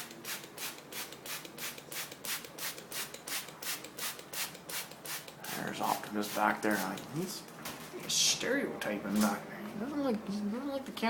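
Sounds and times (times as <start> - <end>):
spray bottle hissing: 0.0 - 7.0.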